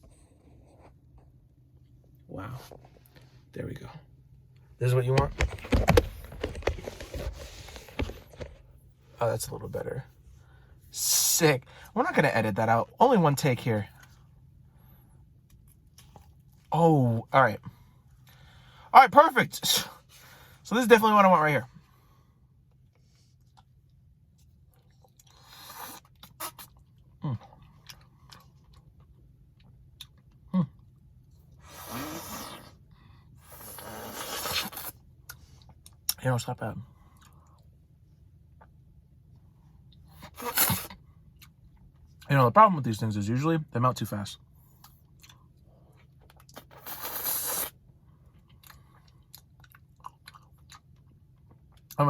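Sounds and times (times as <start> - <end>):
quiet chewing: 22.7 - 31.5, 37.0 - 37.7, 48.2 - 52.0.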